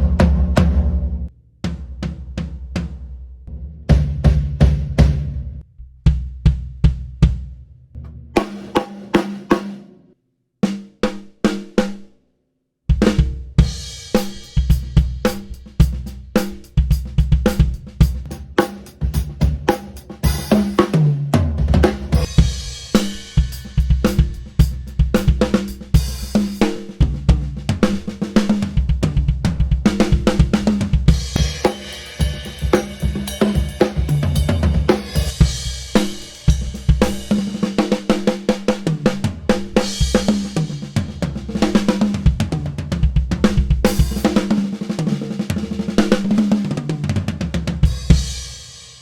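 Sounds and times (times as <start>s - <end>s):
drum kit playing: 0.0s - 10.0s, 12.9s - 49.0s
cymbal crashes: 31.4s - 36.8s.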